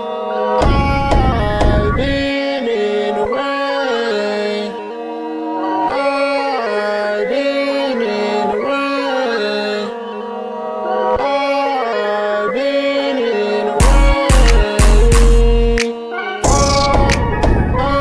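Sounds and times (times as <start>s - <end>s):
instrumental rap beat melody: 0.0s - 4.8s, 11.2s - 18.0s.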